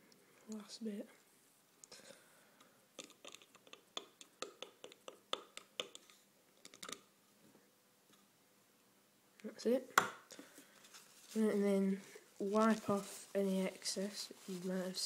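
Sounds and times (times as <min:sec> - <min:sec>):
plastic cup clicks and taps: 0:03.0 - 0:07.0.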